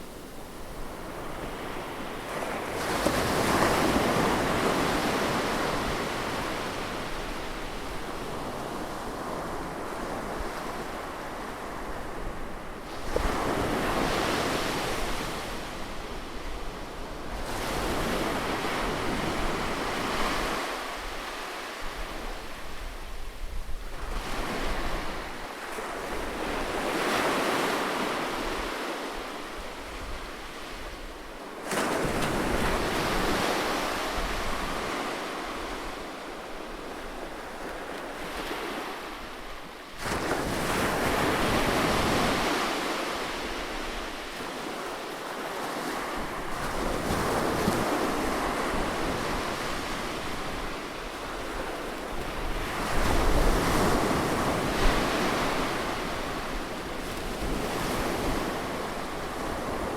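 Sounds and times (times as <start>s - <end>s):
ocean surf breaking on beach: 24.1s - 59.9s.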